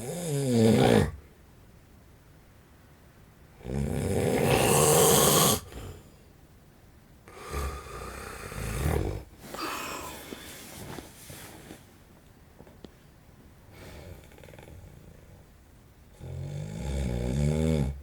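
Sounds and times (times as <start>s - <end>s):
man snoring: 0.0s - 1.2s, 3.6s - 5.9s, 7.3s - 10.1s, 16.2s - 18.0s.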